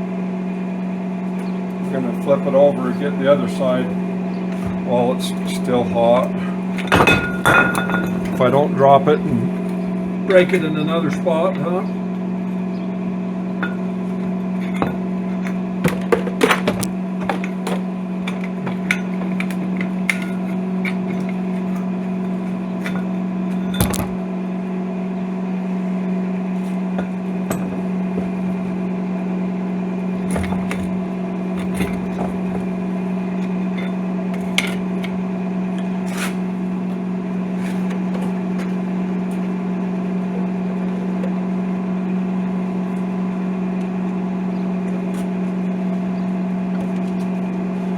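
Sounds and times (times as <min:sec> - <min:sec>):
welding machine humming: 0:00.0 - 0:47.9.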